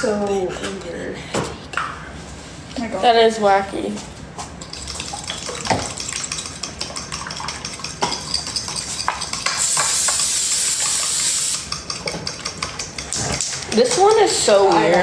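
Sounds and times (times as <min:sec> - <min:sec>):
utensil stirring in a bowl: 0:00.0 - 0:15.0
kitchen clatter: 0:04.4 - 0:15.0
loud steady hiss: 0:09.6 - 0:11.7.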